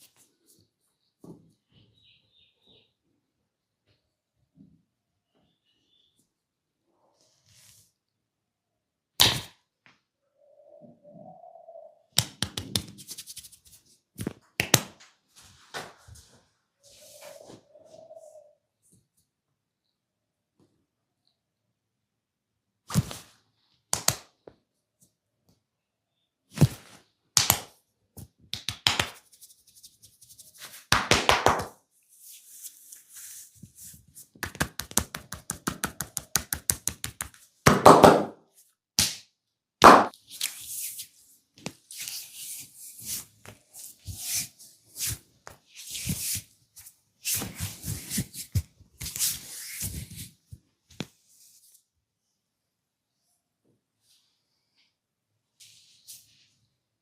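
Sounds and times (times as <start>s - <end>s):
palms slapping and tapping head: 12.2s - 13.0s, 28.5s - 29.2s, 30.9s - 31.7s, 34.3s - 38.3s.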